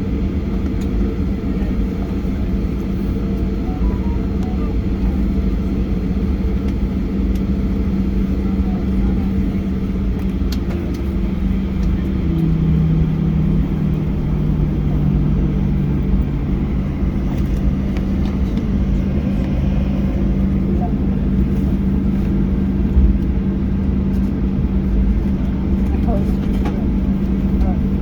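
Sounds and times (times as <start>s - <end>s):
airplane cabin engine drone: 0.0s - 28.0s
second lower hum: 11.8s - 23.7s.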